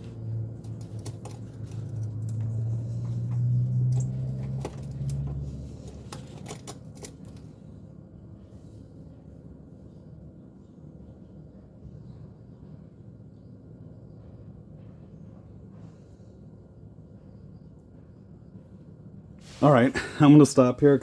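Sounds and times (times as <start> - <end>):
low engine hum: 0.0 - 13.3
hand tools clicking and clattering: 0.6 - 7.5.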